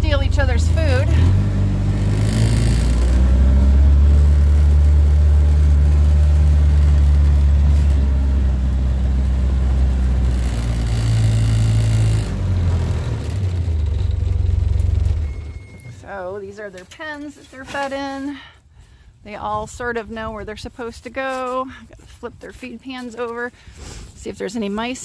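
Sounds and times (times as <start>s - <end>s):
utility vehicle engine running: 0.0s - 16.2s.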